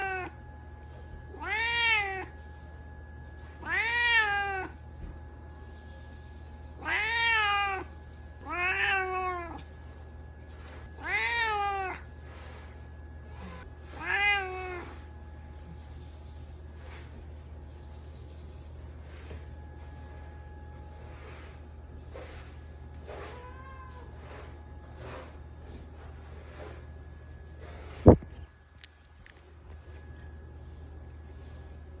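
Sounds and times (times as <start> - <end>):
cat meowing: 0.0 - 0.4, 1.4 - 2.3, 3.6 - 4.8, 6.8 - 9.6, 13.9 - 14.9, 23.2 - 24.1.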